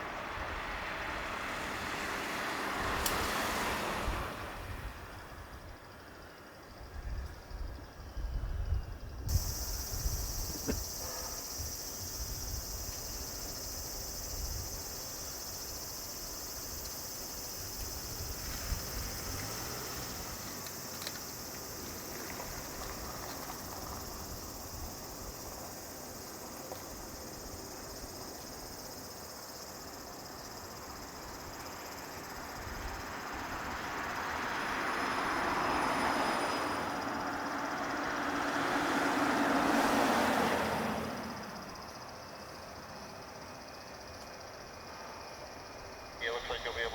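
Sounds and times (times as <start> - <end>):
insects buzzing: 0.0 - 46.9
jet aircraft engines on approach: 9.3 - 27.9, 31.6 - 43.1, 46.0 - 46.9.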